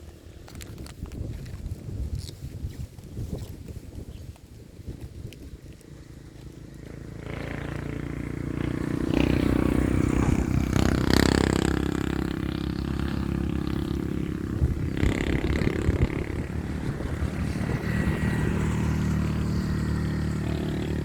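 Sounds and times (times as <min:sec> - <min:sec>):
engine running: 0:05.6 - 0:21.0.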